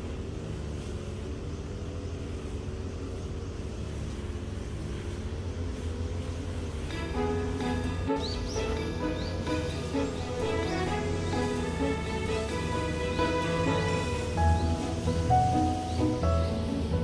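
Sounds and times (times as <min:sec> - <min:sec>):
road traffic rumble: 0:00.0 - 0:17.0
background music: 0:06.8 - 0:17.0.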